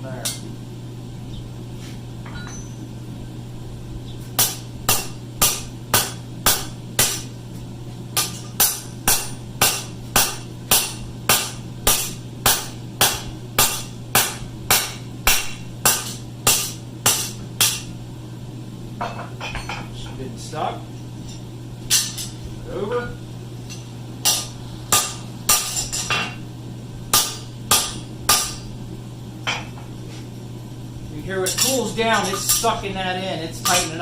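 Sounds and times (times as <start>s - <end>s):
steady low hum: 0.0s - 34.0s
hammer striking steel on anvil: 4.4s - 7.3s, 8.2s - 17.9s, 23.7s - 26.4s, 27.1s - 28.7s, 31.4s - 32.8s, 33.6s - 34.0s.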